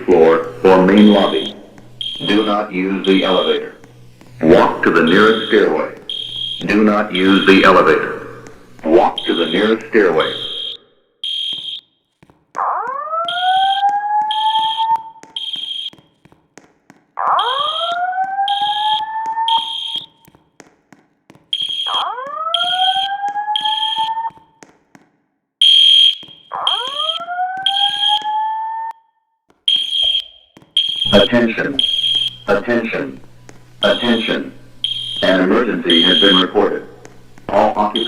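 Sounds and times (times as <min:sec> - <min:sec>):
high-pitched beeping: 0:01.0 - 0:03.8, 0:04.6 - 0:08.2, 0:09.1 - 0:11.8, 0:13.3 - 0:15.9, 0:17.4 - 0:20.2, 0:21.6 - 0:24.2, 0:29.7 - 0:32.5, 0:33.8 - 0:36.6
slow whoop alarm tone: 0:01.0 - 0:03.8, 0:05.0 - 0:07.8, 0:09.1 - 0:11.8, 0:12.6 - 0:15.9, 0:17.2 - 0:20.2, 0:21.6 - 0:24.4, 0:25.6 - 0:29.0, 0:34.0 - 0:36.6.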